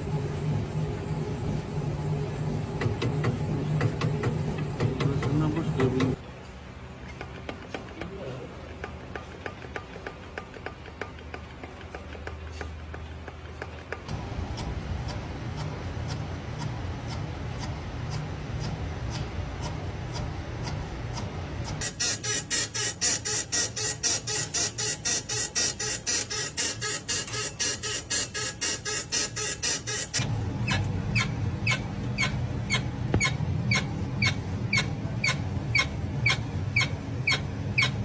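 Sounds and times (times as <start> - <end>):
regular engine ticking: 2.7 - 6.2, 8.8 - 21.8.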